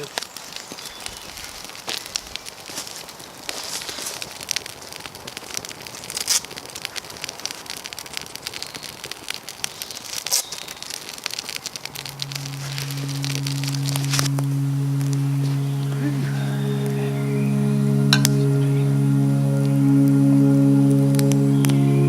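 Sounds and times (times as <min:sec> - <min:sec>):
wood fire crackling and popping: 0:00.0 - 0:16.9.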